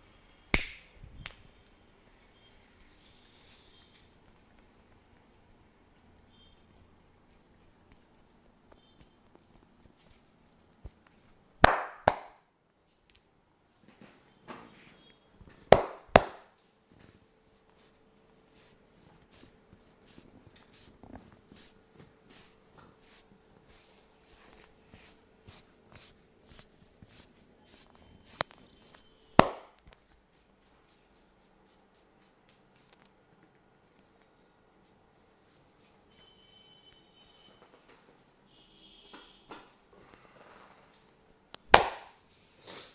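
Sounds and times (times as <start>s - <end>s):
hands slapping the body: 0.5s - 1.5s, 10.8s - 12.4s, 15.7s - 16.5s, 28.3s - 30.0s, 41.7s - 42.2s.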